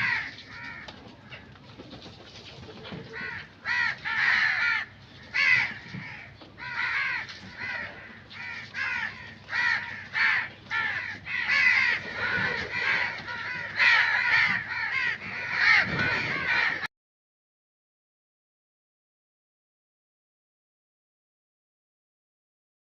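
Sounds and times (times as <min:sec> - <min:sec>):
crows cawing: 0:00.0 - 0:01.5, 0:03.1 - 0:16.9.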